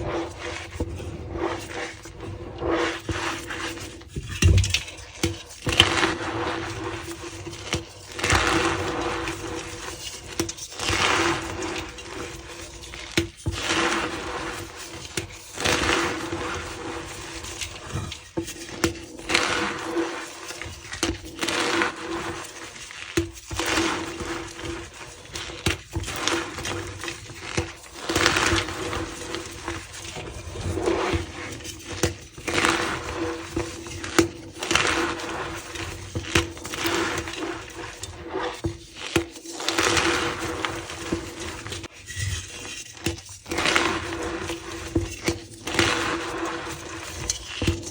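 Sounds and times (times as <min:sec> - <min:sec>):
chalk crunching and cracking: 0:00.0 - 0:47.9.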